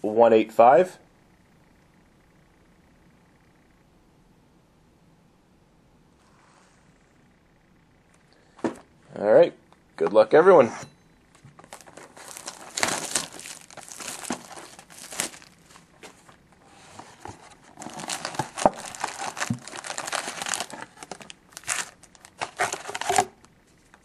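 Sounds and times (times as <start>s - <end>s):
plastic wrapping tearing and crinkling: 11.6s - 16.3s, 17.2s - 23.5s.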